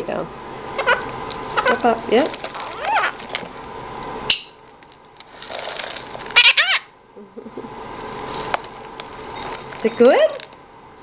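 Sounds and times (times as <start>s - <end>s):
rustling: 0.6s - 3.8s, 4.6s - 6.4s, 7.8s - 10.6s
conure calling: 0.7s - 1.8s, 2.6s - 3.2s, 6.3s - 7.0s
sharp high chirp: 4.3s - 4.7s.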